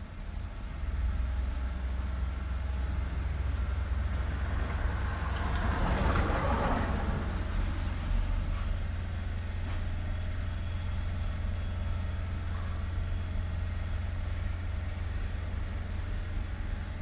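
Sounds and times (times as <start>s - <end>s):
low traffic rumble: 0.0s - 17.0s
vehicle passing close by: 3.3s - 8.7s.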